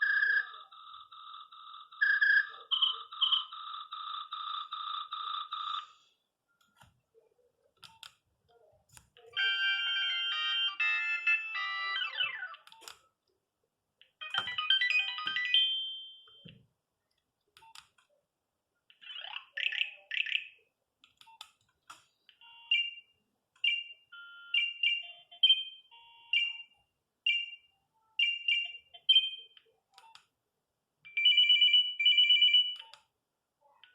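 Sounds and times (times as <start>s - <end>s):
phone ringtone tune: 0.0s - 6.0s, 9.4s - 12.6s, 14.2s - 16.4s, 22.4s - 27.6s, 28.2s - 29.5s, 31.1s - 32.8s.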